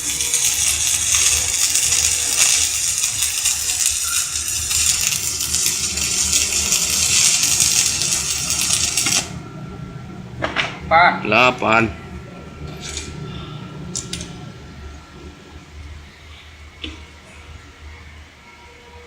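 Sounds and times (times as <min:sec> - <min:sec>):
arc welding crackling hiss: 0:00.0 - 0:09.4.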